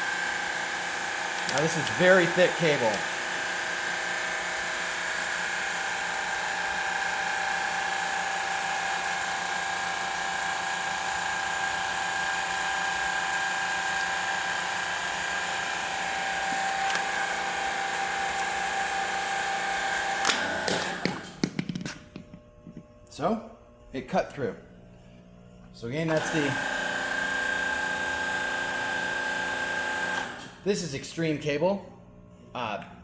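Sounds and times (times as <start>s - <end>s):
hydraulic pump whining: 0.0s - 22.8s, 26.1s - 30.6s
sharp clicks of cutter: 1.3s - 3.1s.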